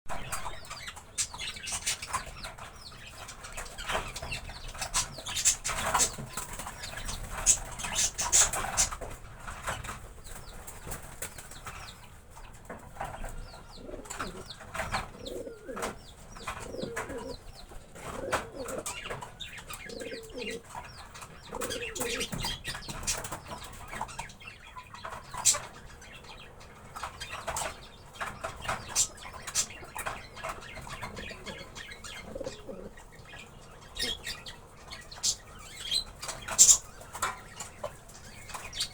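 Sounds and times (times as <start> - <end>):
pigeons cooing: 0.1 - 9.0, 13.2 - 23.9, 28.4 - 38.9.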